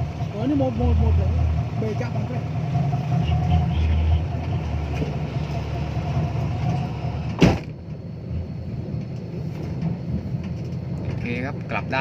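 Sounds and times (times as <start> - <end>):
dump truck engine running: 0.0 - 12.0.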